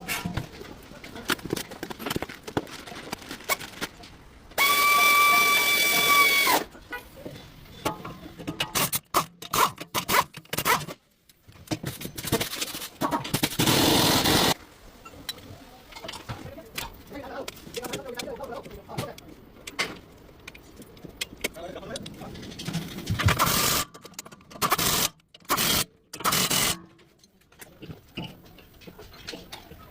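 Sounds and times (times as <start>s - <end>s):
power tool whining: 4.6s - 6.7s
harsh mechanical noise bursts: 13.3s - 14.6s.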